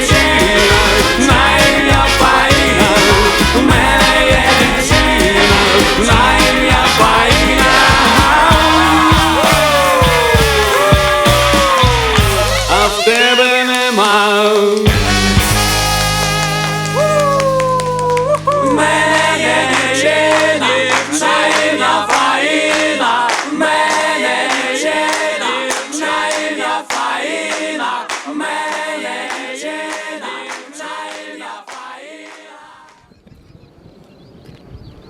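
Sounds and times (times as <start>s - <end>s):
sharp percussive beat: 0.0s - 23.0s
voices singing in harmony: 0.0s - 33.1s.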